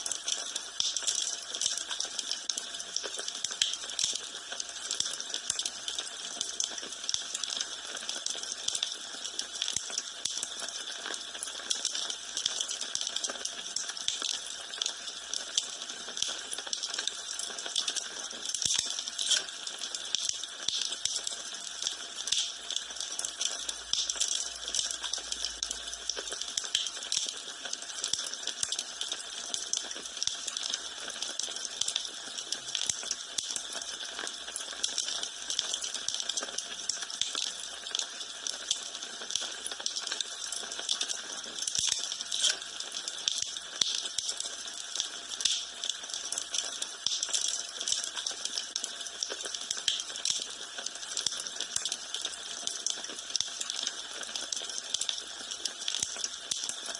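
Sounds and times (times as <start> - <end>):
wood fire crackling: 13.8 - 30.4, 35.5 - 53.9.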